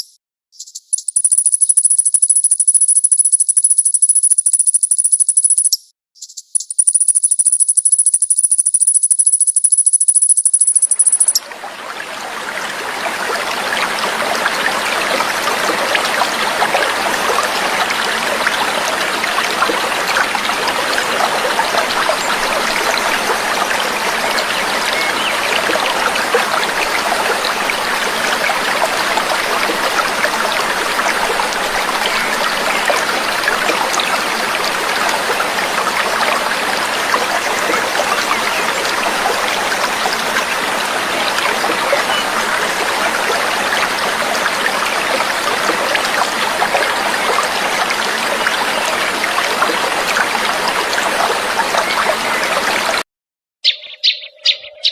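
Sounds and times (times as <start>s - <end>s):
high buzzing trill: 6.6s - 11.4s
water trickling: 6.9s - 53.0s.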